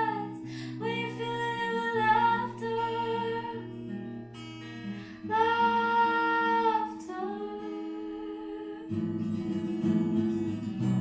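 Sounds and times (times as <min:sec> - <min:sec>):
woman singing: 0:00.0 - 0:03.9, 0:05.2 - 0:09.3
acoustic guitar strumming: 0:00.0 - 0:07.0, 0:08.9 - 0:11.0.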